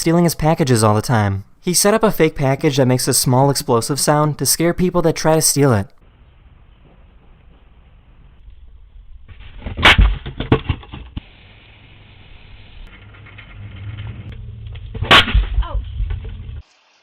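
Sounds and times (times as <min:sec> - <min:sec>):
clattering and knocks: 0:09.5 - 0:11.2
sharp bangs: 0:12.9 - 0:16.1.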